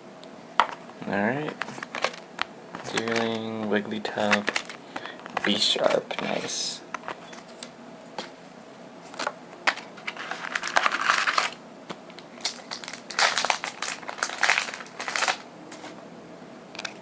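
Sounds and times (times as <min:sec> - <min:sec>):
foil wrapper tearing and crinkling: 0:10.1 - 0:11.6, 0:12.4 - 0:15.4.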